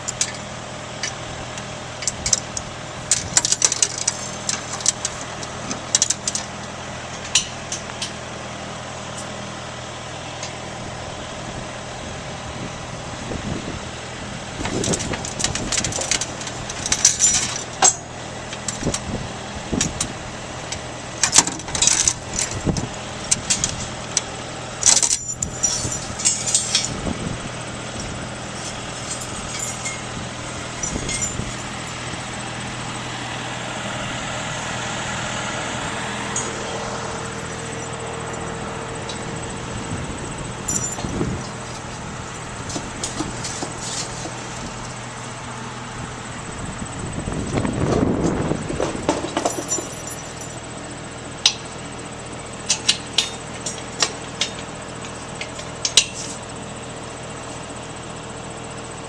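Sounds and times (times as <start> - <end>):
diesel engine running: 0.0 - 59.0
sharp rattles and clicks: 2.0 - 6.6, 14.6 - 19.1, 19.8 - 27.1.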